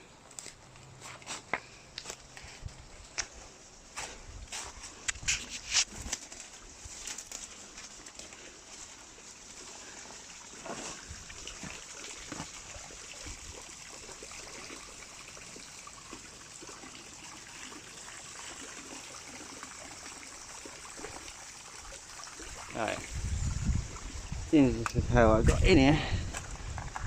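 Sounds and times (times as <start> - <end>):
water trickling: 6.4 - 27.0.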